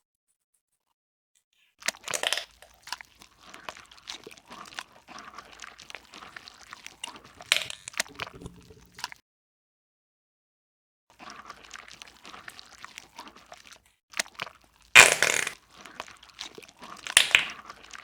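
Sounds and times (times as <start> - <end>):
hands squishing slime: 16.9 - 18.0.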